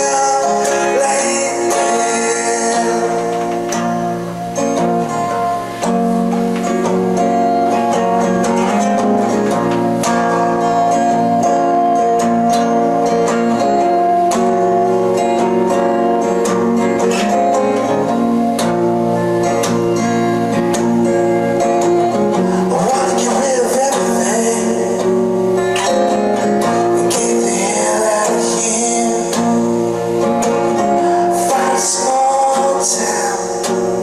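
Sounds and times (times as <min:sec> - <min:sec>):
guitar strummed and picked: 0:00.0 - 0:34.0.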